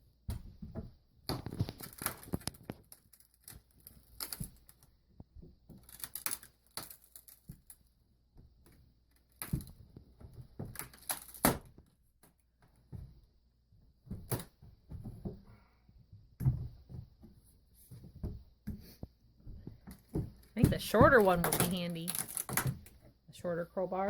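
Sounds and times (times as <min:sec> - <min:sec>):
wood cracking and splintering: 0:20.1 - 0:23.0.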